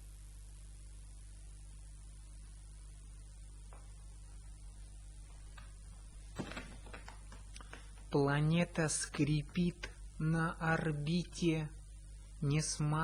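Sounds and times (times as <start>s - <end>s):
electrical mains hum: 0.0s - 13.0s.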